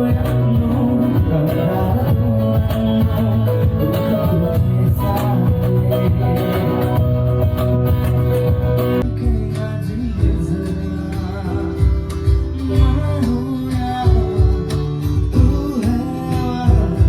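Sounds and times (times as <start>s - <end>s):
loud music over sound system: 0.0s - 17.0s.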